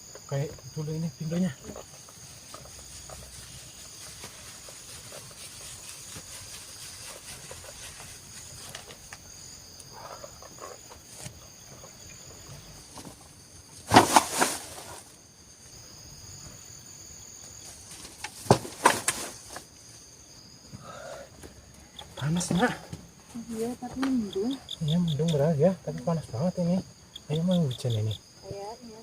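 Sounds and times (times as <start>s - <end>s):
insects buzzing high-pitched: 0.0s - 29.0s
knocks and rustles: 10.8s - 15.1s, 17.8s - 19.7s.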